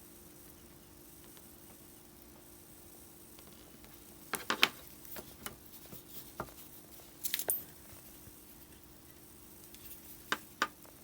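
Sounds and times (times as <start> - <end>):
faint electrical hum: 0.0 - 11.0
small tools clicking and knocking: 7.2 - 7.7.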